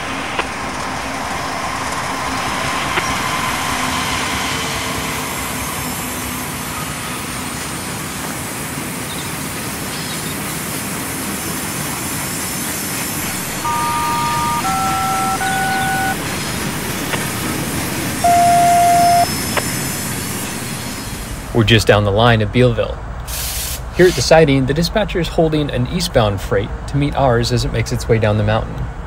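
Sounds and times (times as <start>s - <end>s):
model train rushing: 0.0s - 21.8s
train horn chord: 13.3s - 19.6s.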